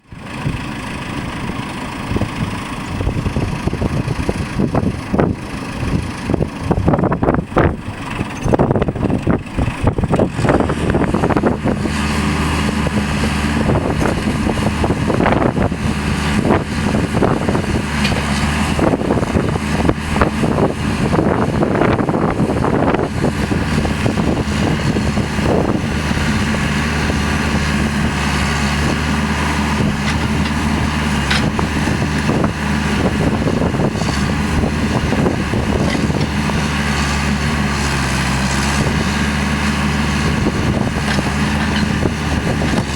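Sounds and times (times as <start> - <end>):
backhoe engine running: 0.0 - 42.9
knocks and clanks: 29.8 - 32.4.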